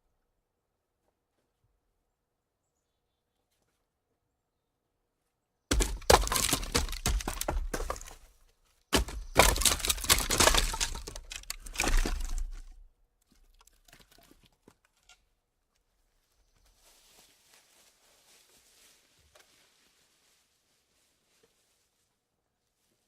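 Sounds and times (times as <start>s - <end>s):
wooden logs rolling and clattering: 5.7s - 15.2s.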